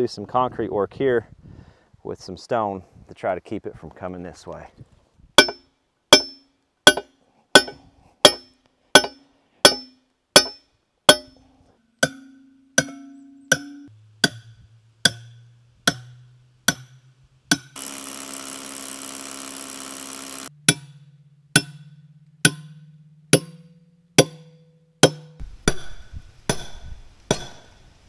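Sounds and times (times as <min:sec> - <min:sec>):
bass notes: 0:12.1 - 0:17.8, 0:20.4 - 0:24.4
steady buzzing noise: 0:13.9 - 0:20.7.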